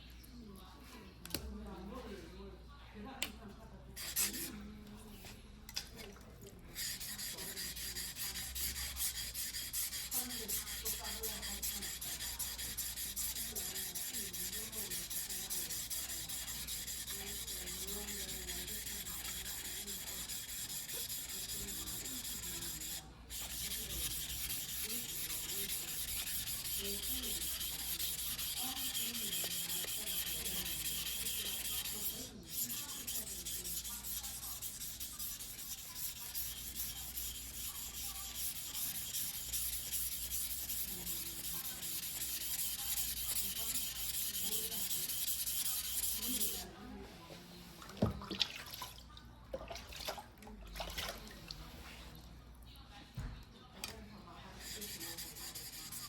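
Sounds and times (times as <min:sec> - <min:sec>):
knife scraping on whetstone: 0:06.8 - 0:46.6.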